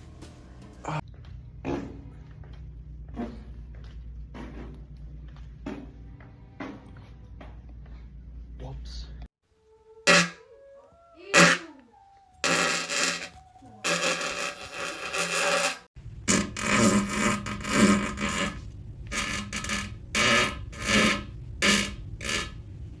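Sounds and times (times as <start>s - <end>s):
man farting: 10.1s - 10.4s, 11.3s - 11.8s, 12.4s - 22.6s.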